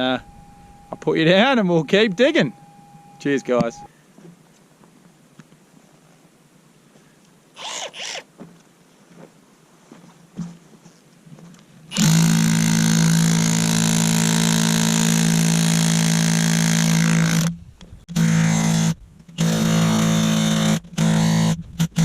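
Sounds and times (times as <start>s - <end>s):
jackhammer hammering into rock: 11.9s - 17.5s, 18.1s - 22.0s.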